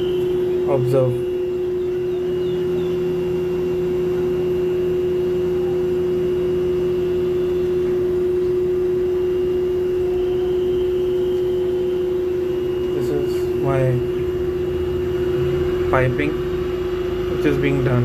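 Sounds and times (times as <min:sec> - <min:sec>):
air conditioner high-pitched hum: 0:00.0 - 0:18.0.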